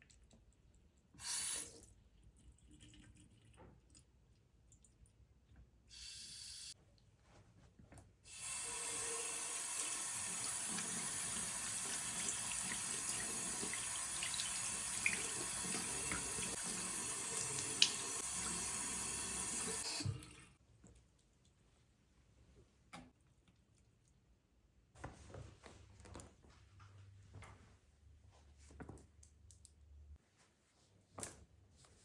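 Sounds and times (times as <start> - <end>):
tap water running into sink: 8.3 - 20.5.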